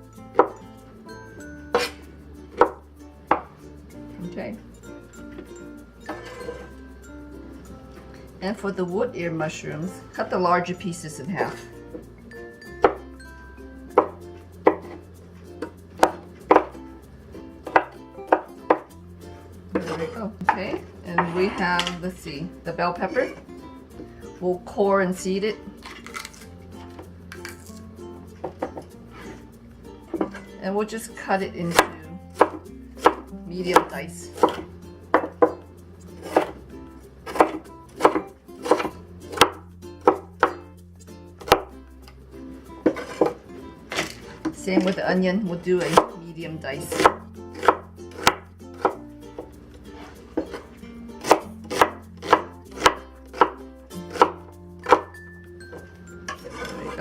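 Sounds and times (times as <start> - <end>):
knife chopping on cutting board: 1.8 - 2.0, 16.0 - 16.8, 19.8 - 21.5, 31.7 - 35.6, 36.2 - 36.6, 37.3 - 40.6, 41.4 - 41.7, 42.9 - 44.2, 45.8 - 46.1, 46.9 - 49.0, 50.4 - 55.2
knife tapping cutting board: 16.0 - 16.8.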